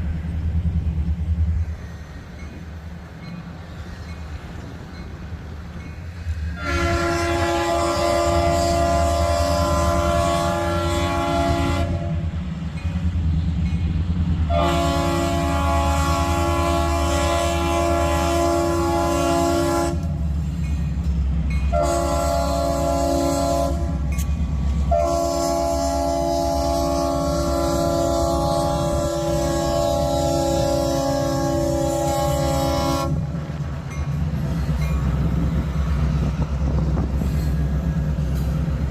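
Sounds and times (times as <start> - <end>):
train rumbling: 0.0 - 38.9
locomotive horn: 6.5 - 12.4, 14.5 - 20.2, 21.7 - 33.4.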